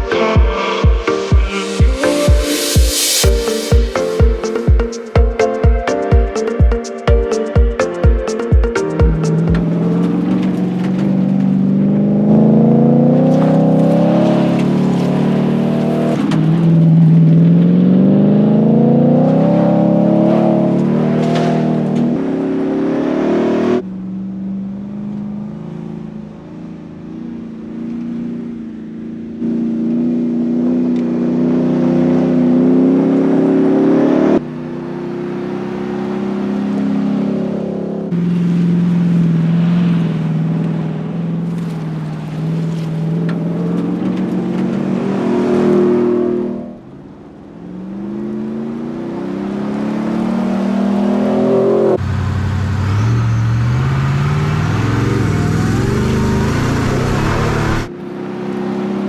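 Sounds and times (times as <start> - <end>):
rushing noise: 0.0 - 10.4, 52.0 - 57.9
truck engine accelerating: 7.5 - 59.0.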